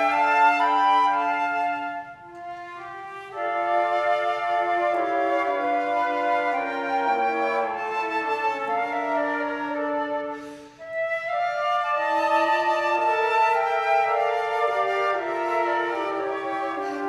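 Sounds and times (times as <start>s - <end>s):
flute choir playing: 0.0s - 17.0s
breathy rush of air: 10.4s - 10.9s.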